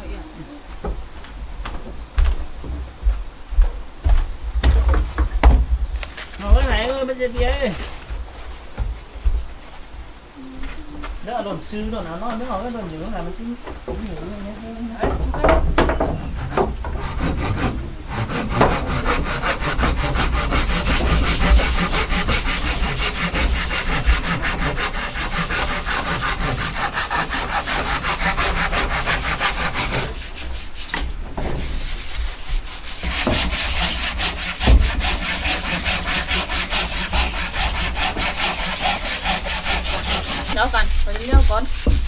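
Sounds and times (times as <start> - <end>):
saw cutting through wood: 13.9 - 42.0.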